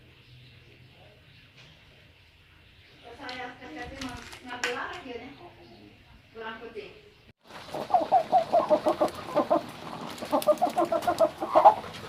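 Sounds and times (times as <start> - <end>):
hen clucking: 7.6 - 12.0.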